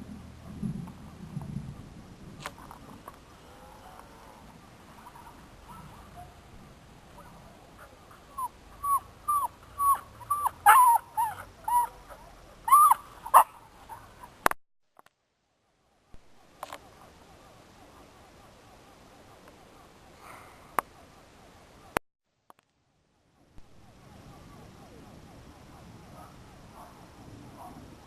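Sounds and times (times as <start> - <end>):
faint background hiss: 0.0 - 28.0
animal calling: 7.1 - 14.4.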